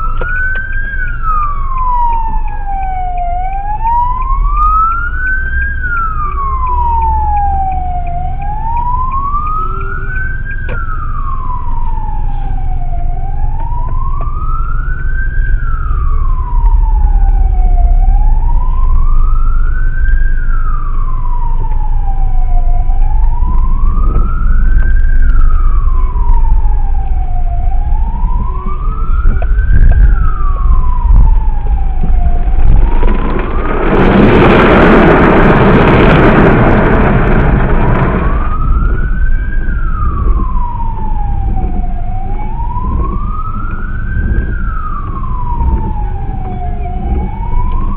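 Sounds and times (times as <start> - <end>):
emergency vehicle siren wailing: 0.0 - 47.9
traffic rumble: 0.0 - 47.9
loud rushing noise: 32.4 - 39.1.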